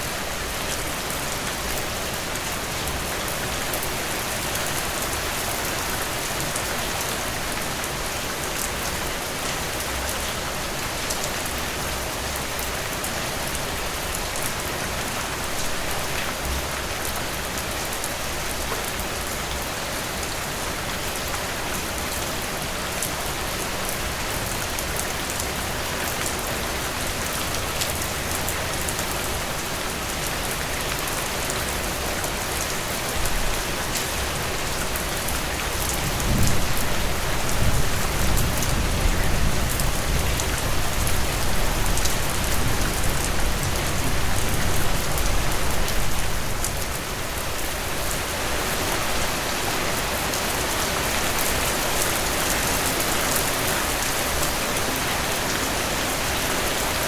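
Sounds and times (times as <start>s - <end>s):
heavy rain: 0.0s - 57.0s
low rumble of thunder: 36.0s - 46.4s.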